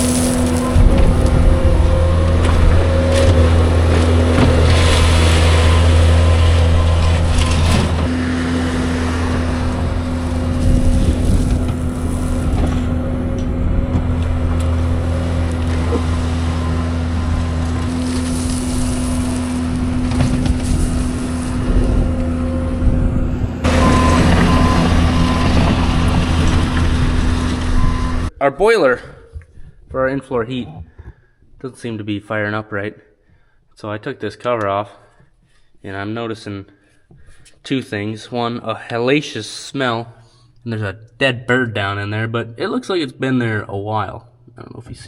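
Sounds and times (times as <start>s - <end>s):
diesel loader engine running: 0.0s - 28.3s.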